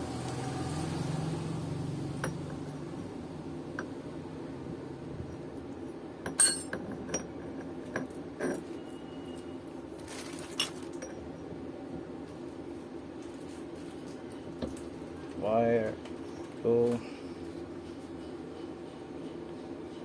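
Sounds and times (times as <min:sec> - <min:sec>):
metal tools clinking: 0:06.3 - 0:07.2.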